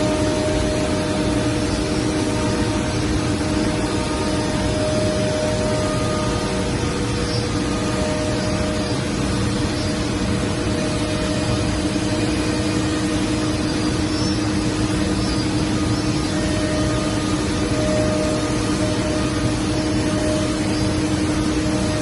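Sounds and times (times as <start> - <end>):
cnc router whirring: 0.0 - 22.0.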